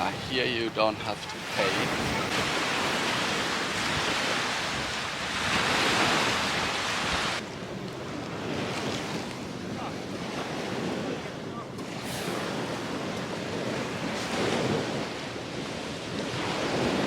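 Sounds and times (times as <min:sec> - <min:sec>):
sea waves on shore: 0:00.0 - 0:17.0
wind noise on microphone: 0:01.6 - 0:17.0.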